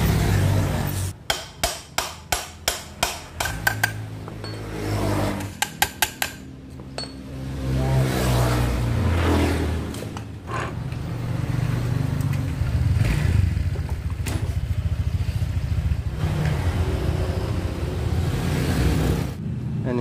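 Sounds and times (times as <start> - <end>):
metal tools knocking: 1.3 - 4.6, 5.5 - 7.3
motorcycle engine running: 11.1 - 20.0.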